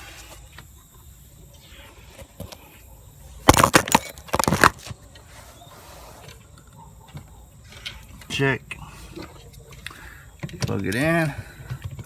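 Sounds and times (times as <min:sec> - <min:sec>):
rustling and rattling: 0:03.5 - 0:05.0.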